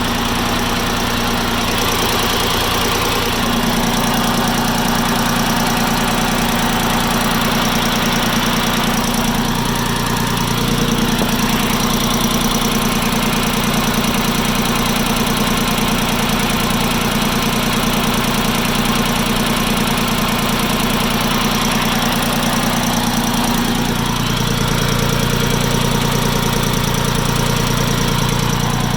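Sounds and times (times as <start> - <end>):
diesel tractor engine idling: 0.0 - 28.9
engine knock: 0.0 - 28.9.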